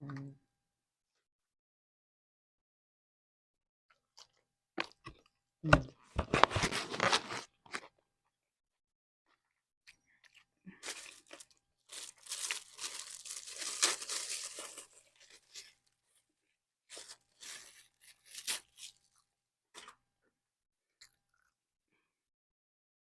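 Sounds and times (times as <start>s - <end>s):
crunchy chewing of burger: 3.9s - 5.3s, 9.9s - 16.2s, 16.9s - 20.1s.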